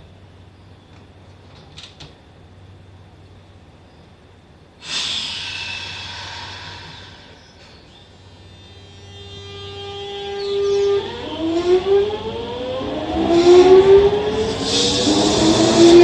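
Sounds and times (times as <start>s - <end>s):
train air hiss: 4.7s - 9.8s, 14.2s - 16.0s
train motor whine: 4.8s - 16.0s.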